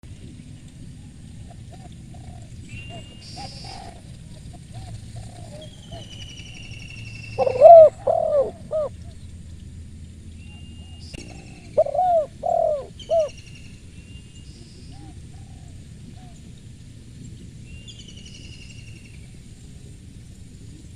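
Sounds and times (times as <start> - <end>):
dove cooing: 1.4 - 6.1, 7.4 - 9.2, 11.2 - 13.4
small birds chirping: 1.8 - 9.6, 10.2 - 16.5
distant coos: 7.2 - 9.2, 11.2 - 13.4.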